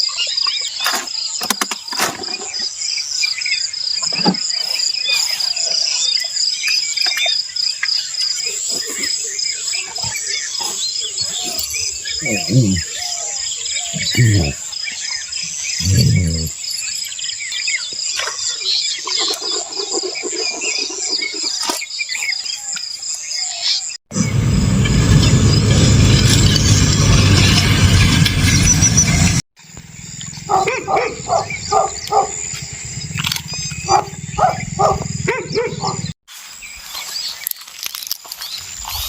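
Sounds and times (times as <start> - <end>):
insects chirping: 0.1 - 39.0
rapid animal call: 9.8 - 14.6, 15.6 - 16.6, 30.3 - 36.1.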